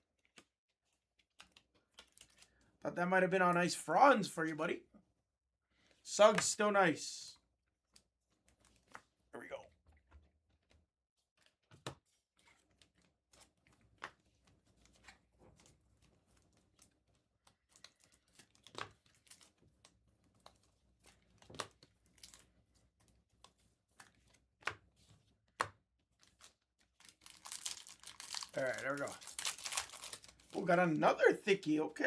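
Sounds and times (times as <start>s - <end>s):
cards handled: 25.6s - 30.7s
wrapper tearing and crinkling: 26.3s - 30.7s.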